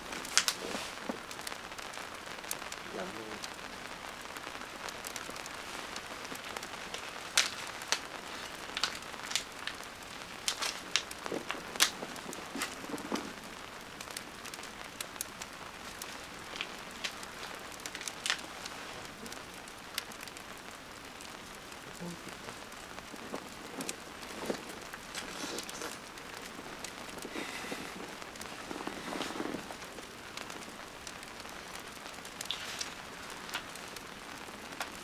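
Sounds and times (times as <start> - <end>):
rain falling: 0.0 - 35.0.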